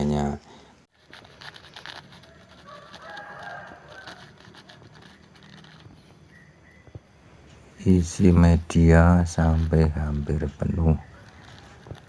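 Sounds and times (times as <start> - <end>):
rustling of potting mix: 0.9 - 6.2, 7.3 - 12.0
rooster crowing: 2.1 - 5.8.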